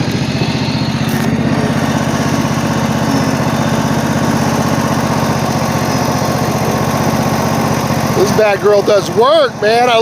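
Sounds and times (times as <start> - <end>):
lawn mower engine running: 0.0 - 10.0.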